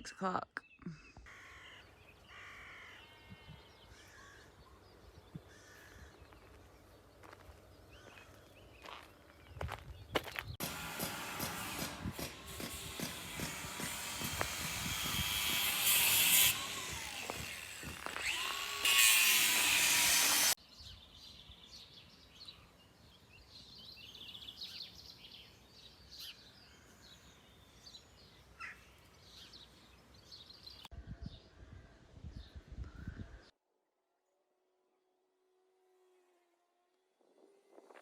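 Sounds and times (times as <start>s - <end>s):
birdsong chirps: 0.0s - 10.6s, 20.6s - 33.5s.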